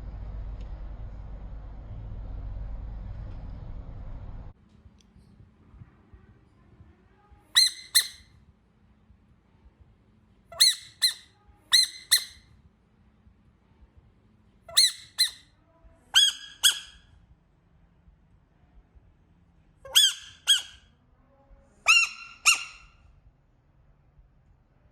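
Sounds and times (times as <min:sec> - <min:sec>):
frog high-pitched squeaks: 0:07.6 - 0:08.3, 0:10.6 - 0:12.4, 0:14.7 - 0:15.4, 0:16.2 - 0:17.1, 0:19.9 - 0:20.9, 0:21.9 - 0:23.0.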